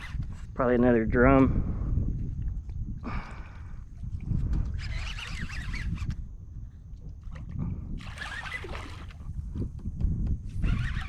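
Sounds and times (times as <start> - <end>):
wind rumble on microphone: 0.0 - 11.0.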